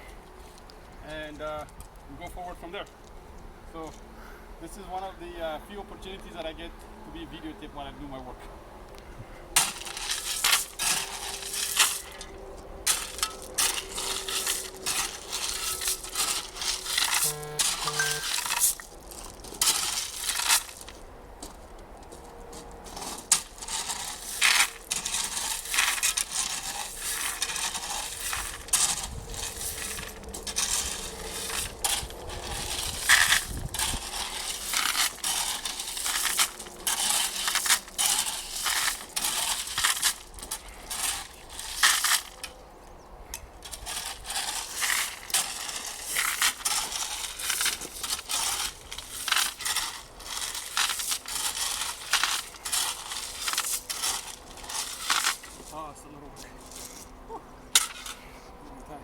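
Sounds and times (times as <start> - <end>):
foam boards crunching and scraping: 9.6 - 42.5, 43.6 - 57.1
foam crackles: 43.6 - 56.2.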